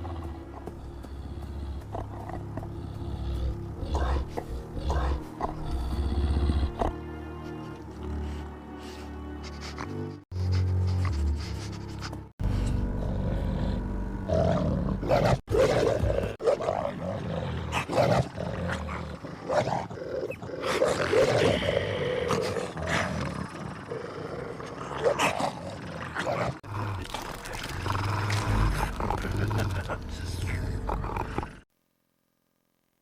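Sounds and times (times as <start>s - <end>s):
wolf growls: 0.0s - 7.1s, 12.5s - 31.7s.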